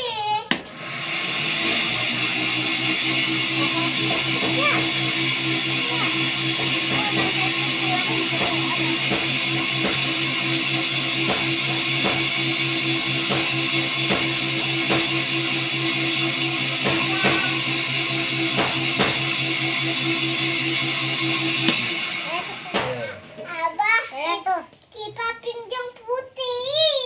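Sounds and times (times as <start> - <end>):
guitar and drum music: 2.6 - 24.0.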